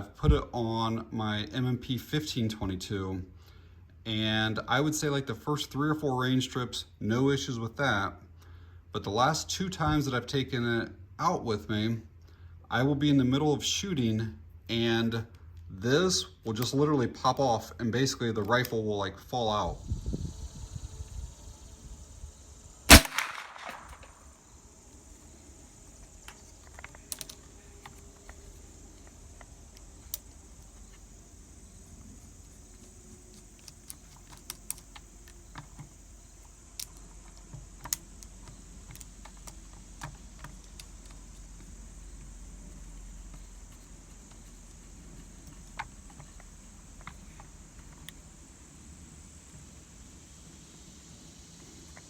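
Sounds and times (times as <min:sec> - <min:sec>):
loud sharp crack: 0:22.9 - 0:24.3.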